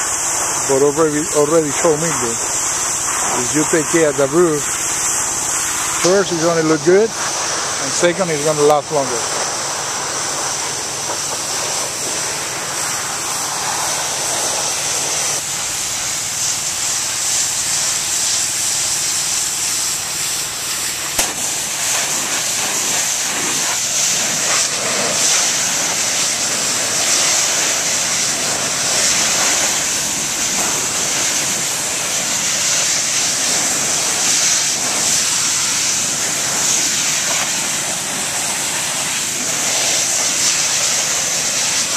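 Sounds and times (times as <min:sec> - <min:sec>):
pressure washer spraying tiles: 0:00.0 - 0:41.9.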